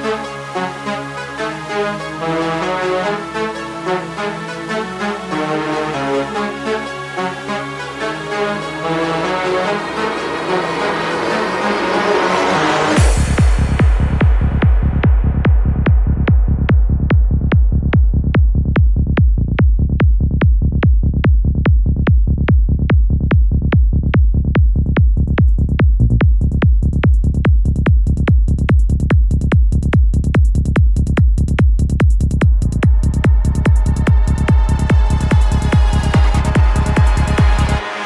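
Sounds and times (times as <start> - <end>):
electronic trance music: 0.0 - 19.2, 27.3 - 38.0
steady kick drum: 13.0 - 38.0
hi-hats: 28.0 - 38.0.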